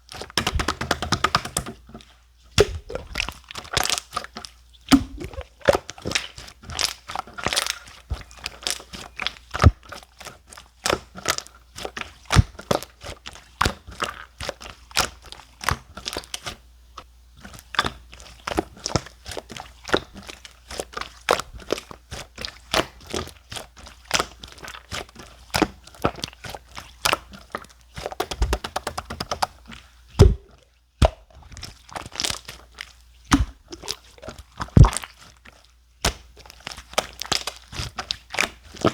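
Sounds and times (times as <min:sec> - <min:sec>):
slime squished clicking and popping: 0:02.6 - 0:04.2, 0:04.9 - 0:07.8, 0:28.0 - 0:29.6, 0:30.2 - 0:32.6.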